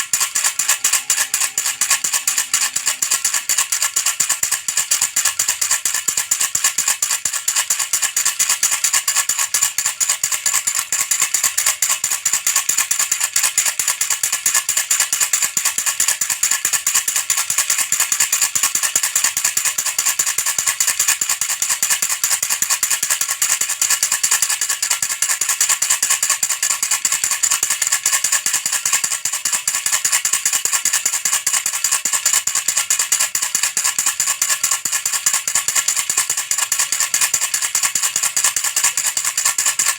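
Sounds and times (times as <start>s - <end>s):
baby rattle shaken: 19.8s - 39.9s.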